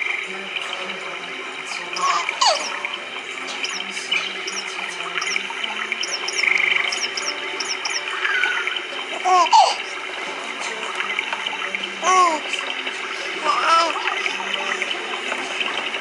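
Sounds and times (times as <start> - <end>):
bird chirping and warbling: 2.1 - 2.9, 3.5 - 8.8.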